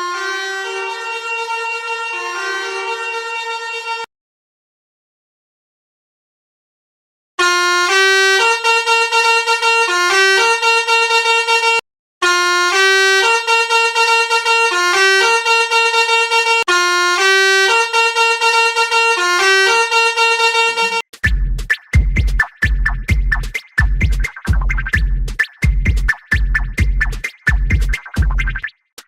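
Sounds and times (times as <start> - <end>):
musical vehicle horn tune: 0.0 - 4.1, 7.4 - 21.1.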